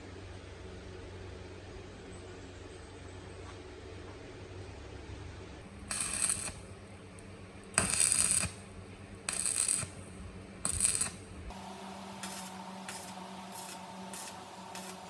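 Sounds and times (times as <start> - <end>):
hissing spray bursts: 11.5 - 15.0.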